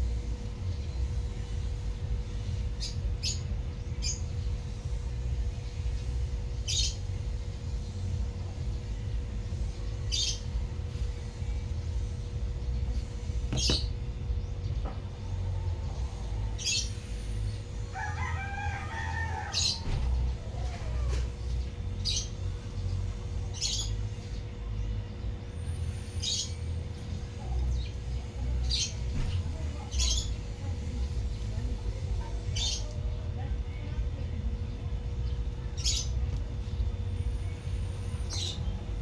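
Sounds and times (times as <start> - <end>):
faint whine: 0.0 - 39.0
steady low rumble: 0.0 - 39.0
rooster crowing: 17.8 - 21.3.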